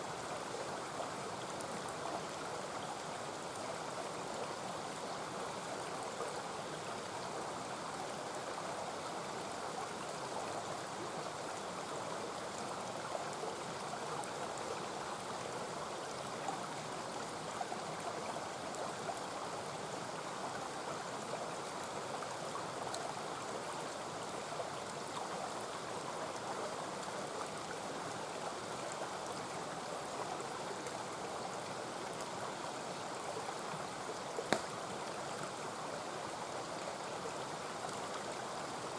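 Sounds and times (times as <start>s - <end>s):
campfire crackling: 34.5s - 34.8s.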